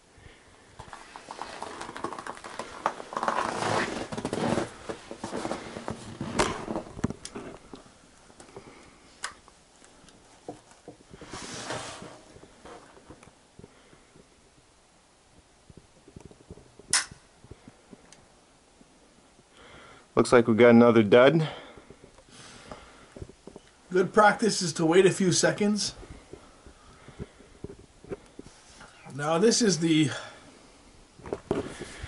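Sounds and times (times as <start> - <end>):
sharp rifle bolt clicks: 16.9 - 17.2.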